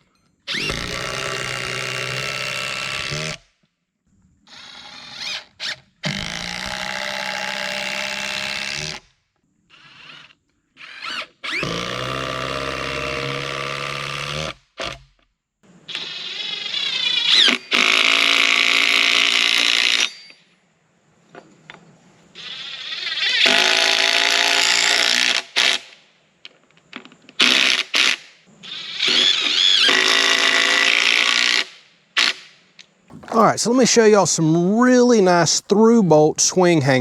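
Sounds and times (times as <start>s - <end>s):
power drill running: 0.5s - 3.4s, 4.5s - 8.8s, 33.1s - 33.4s.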